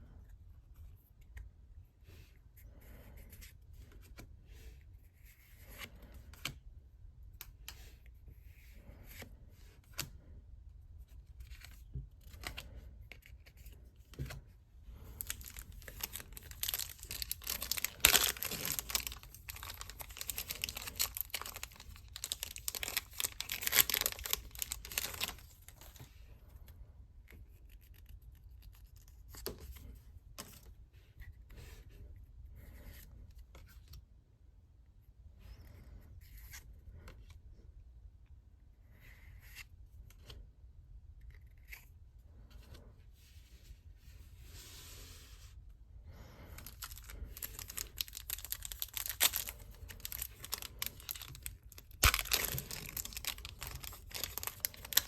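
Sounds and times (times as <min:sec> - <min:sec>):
card packaging clicks and rustles: 0:15.1 - 0:26.0, 0:46.6 - 0:55.0
packaging tearing and crinkling: 0:15.2 - 0:26.0, 0:46.6 - 0:55.0.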